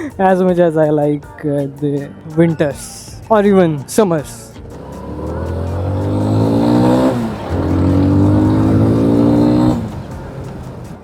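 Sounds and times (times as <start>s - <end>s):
motorcycle engine accelerating: 4.6s - 11.0s.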